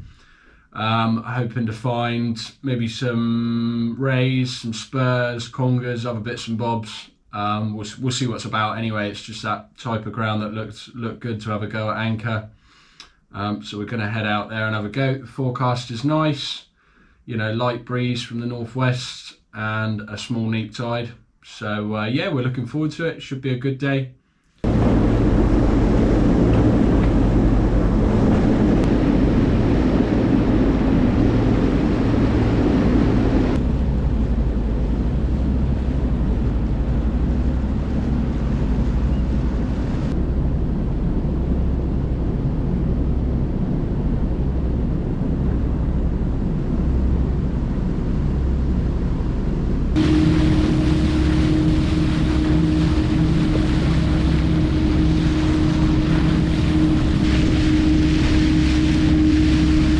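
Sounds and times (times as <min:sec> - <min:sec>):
boat engine drone: 0:24.6 - 0:59.9
water noise: 0:24.6 - 0:59.9
wind rushing over microphone: 0:24.6 - 0:59.9.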